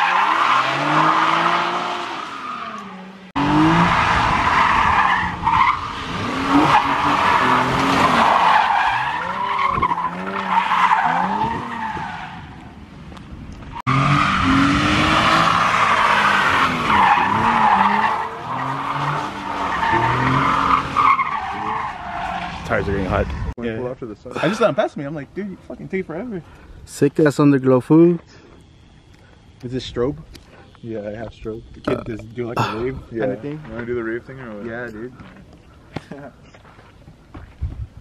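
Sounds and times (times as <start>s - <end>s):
car engine revving: 0.0s - 11.8s, 13.9s - 23.4s
tire squeal: 0.0s - 12.6s, 13.8s - 23.5s.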